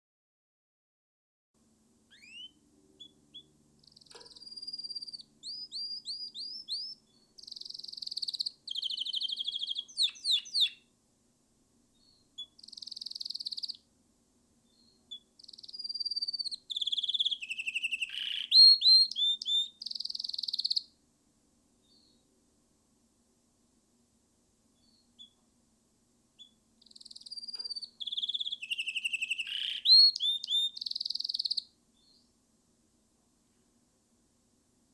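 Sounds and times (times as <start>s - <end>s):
canary singing: 2.1s - 10.9s, 12.0s - 13.9s, 14.7s - 20.9s, 21.9s - 22.2s, 24.8s - 25.4s, 26.4s - 32.3s.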